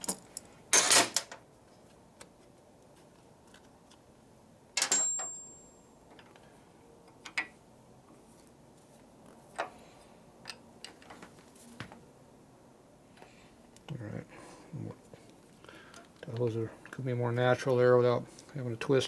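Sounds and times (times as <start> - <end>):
metallic clank ringing: 4.8 - 5.8.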